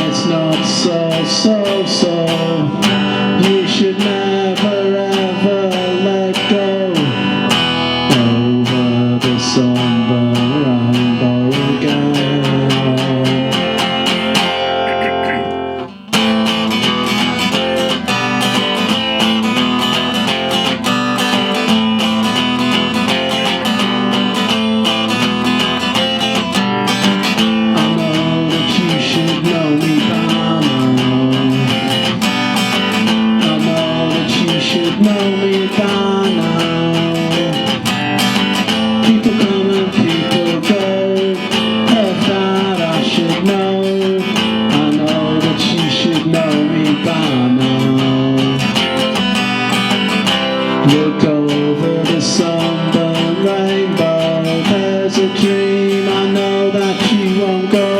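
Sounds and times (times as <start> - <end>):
acoustic guitar strummed and picked: 0.0 - 57.9.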